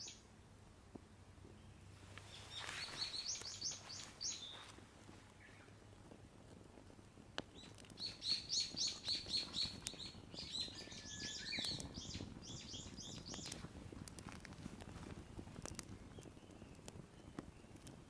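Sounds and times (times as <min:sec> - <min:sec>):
songbird singing high notes: 0:08.0 - 0:13.6.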